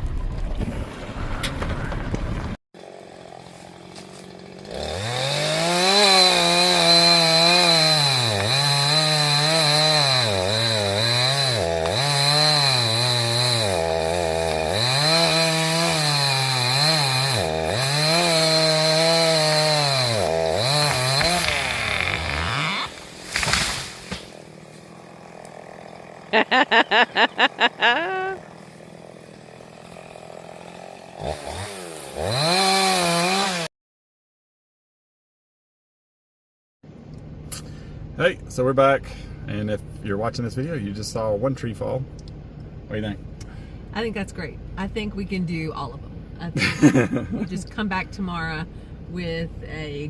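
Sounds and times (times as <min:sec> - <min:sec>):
chainsaw cutting a tree: 0:02.8 - 0:33.7.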